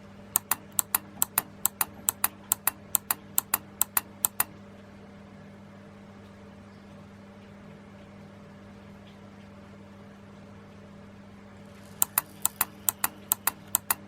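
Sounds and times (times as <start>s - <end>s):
faint steady hum: 0.0s - 14.0s
relays clicking in pairs: 0.4s - 4.5s, 11.9s - 14.0s.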